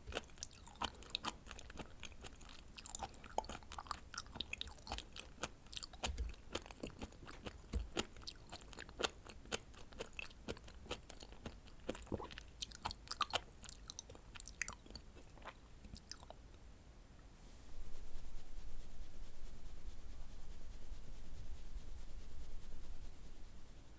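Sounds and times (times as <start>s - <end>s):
chewing mouth clicks and smacks: 0.0s - 16.4s.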